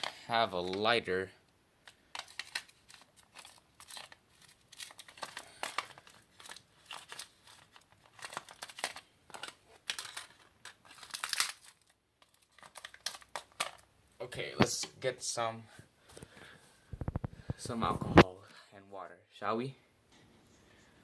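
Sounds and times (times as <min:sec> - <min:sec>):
crinkling and rustling handling: 0:01.8 - 0:15.0, 0:15.6 - 0:18.3.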